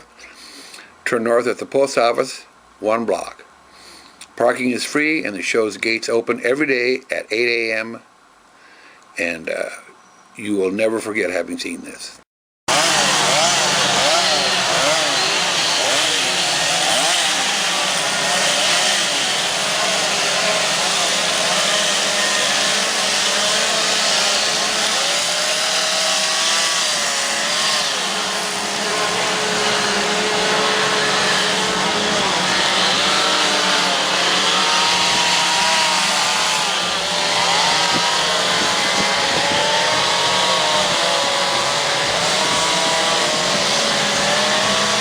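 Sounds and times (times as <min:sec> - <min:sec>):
chainsaws revving: 0:12.7 - 0:45.0.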